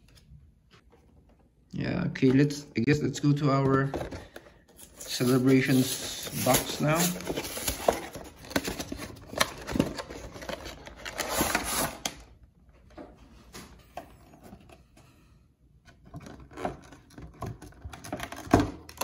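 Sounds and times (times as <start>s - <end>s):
cardboard and plastic packaging rustling: 3.5s - 12.3s.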